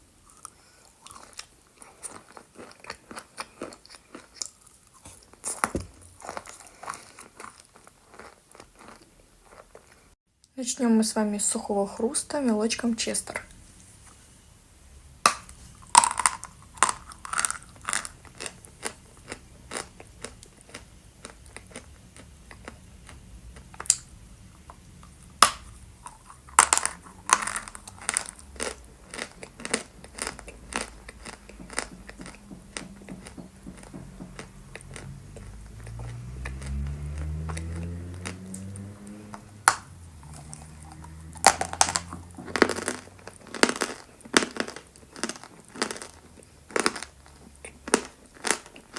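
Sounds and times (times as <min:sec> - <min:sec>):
chalk crunching while chewed: 0:00.2 - 0:10.2, 0:15.8 - 0:24.0, 0:25.4 - 0:48.9
low hum rising in pitch: 0:34.0 - 0:43.3.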